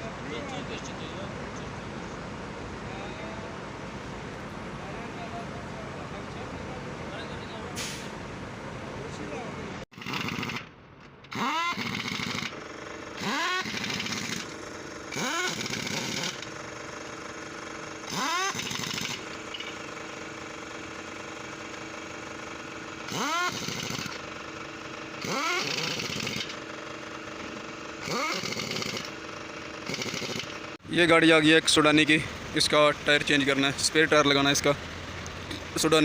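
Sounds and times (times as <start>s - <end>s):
pneumatic impact wrench bursts: 7.8s - 8.1s, 9.9s - 16.6s, 18.0s - 19.8s, 23.0s - 24.3s, 25.1s - 26.7s, 28.0s - 29.2s, 29.8s - 30.6s.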